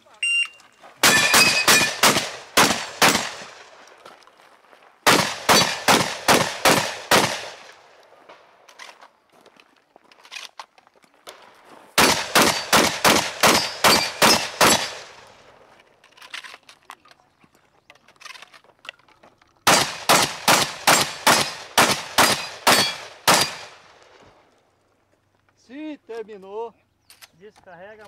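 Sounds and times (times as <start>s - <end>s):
shotgun shots: 1.0s - 3.8s, 5.0s - 7.9s, 12.0s - 15.4s, 19.6s - 24.0s.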